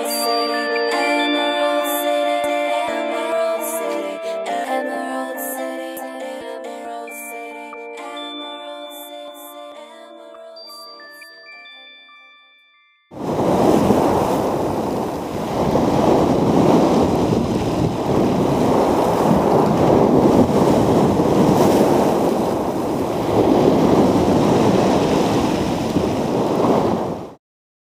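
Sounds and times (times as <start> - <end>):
wind buffeting microphone: 13.2 - 27.4.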